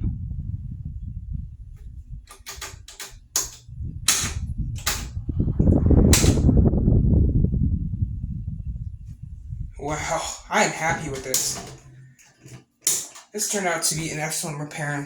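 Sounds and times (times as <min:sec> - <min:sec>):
fan airflow rumbling on microphone: 0:00.0 - 0:12.6
sharp clicks: 0:02.3 - 0:05.2.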